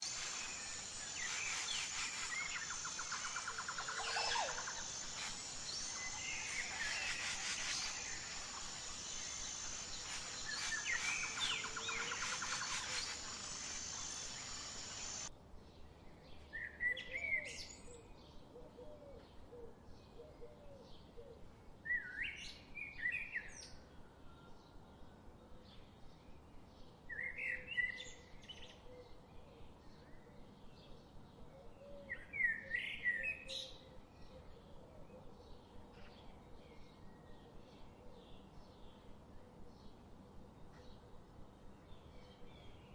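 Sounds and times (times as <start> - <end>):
bird trills: 0.0 - 15.3
birds calling and chirping: 0.0 - 15.3
steady high-pitched drone: 0.0 - 15.3.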